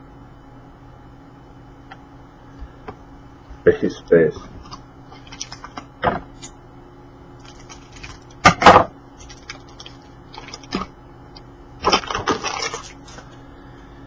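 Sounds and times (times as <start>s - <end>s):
card rustling scrape: 4.5s - 5.9s.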